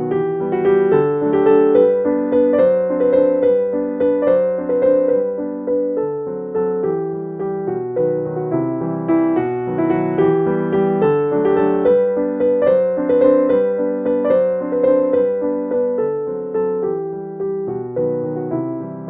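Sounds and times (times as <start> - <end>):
gentle piano melody: 0.0 - 19.0.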